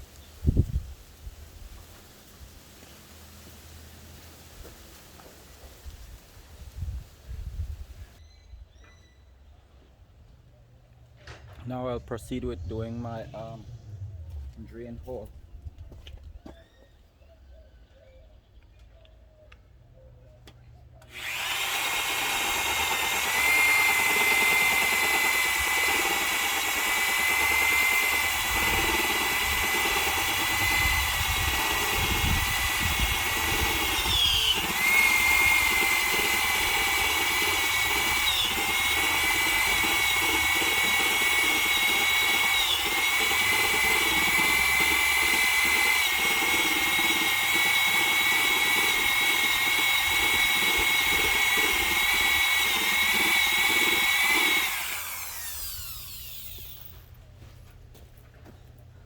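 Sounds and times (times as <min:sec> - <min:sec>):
electric drill boring into wood: 0:21.0 - 0:57.1.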